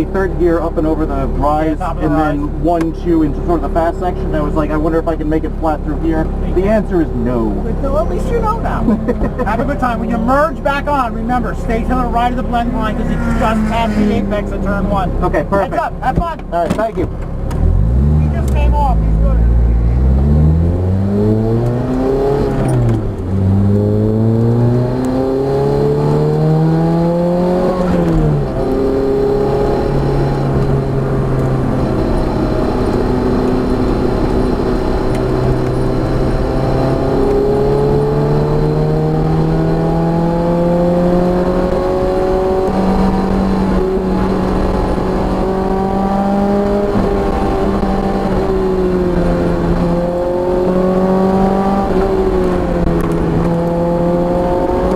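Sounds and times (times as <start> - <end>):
car engine accelerating: 0.0 - 54.9.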